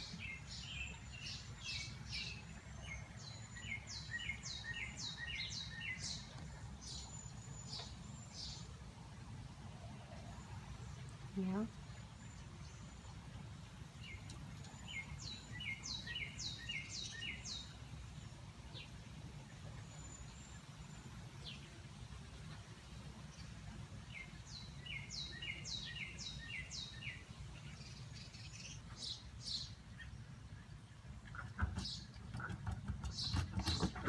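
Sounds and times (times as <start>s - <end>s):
songbird singing whistled notes: 0.0s - 8.7s, 14.0s - 17.8s, 24.1s - 30.1s.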